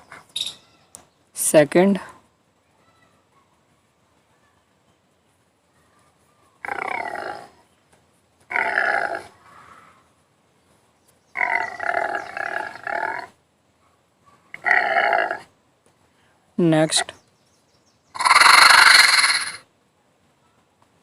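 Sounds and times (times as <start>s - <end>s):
drawn-out animal calls: 6.0s - 7.7s, 8.5s - 10.1s, 14.3s - 15.5s, 18.2s - 19.6s.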